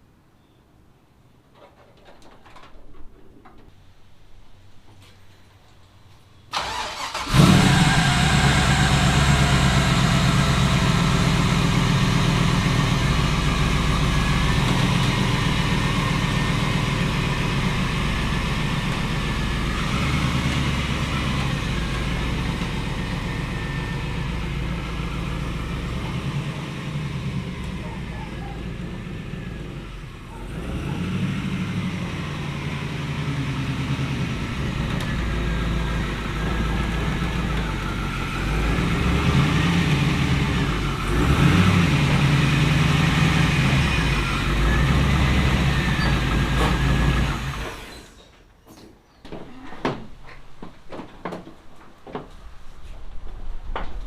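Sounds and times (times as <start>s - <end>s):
vehicle engine running: 6.6s - 48.2s.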